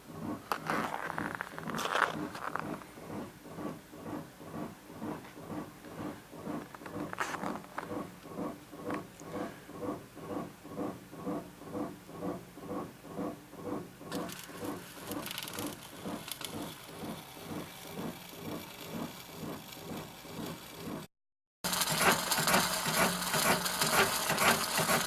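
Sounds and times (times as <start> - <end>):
machine running with regular pulse: 0.0 - 25.0
hiss: 21.7 - 25.0.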